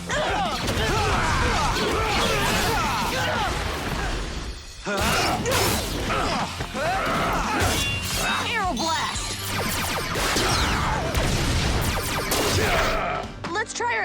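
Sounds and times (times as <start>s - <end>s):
shouted grunts: 0.0s - 4.2s, 4.9s - 8.5s
action music: 0.0s - 14.0s.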